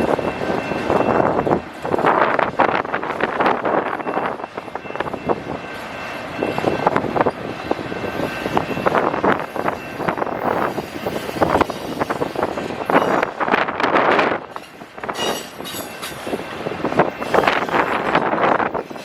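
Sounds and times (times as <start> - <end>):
train wheels clattering on rails: 0.0 - 19.0.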